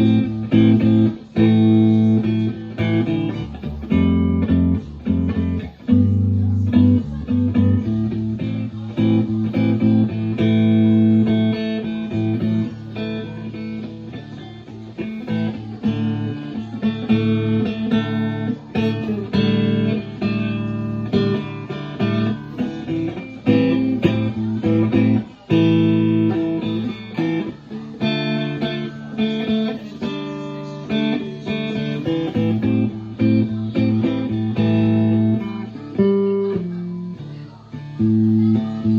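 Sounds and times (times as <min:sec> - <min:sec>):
electric guitar picked melody: 0:00.0 - 0:38.9.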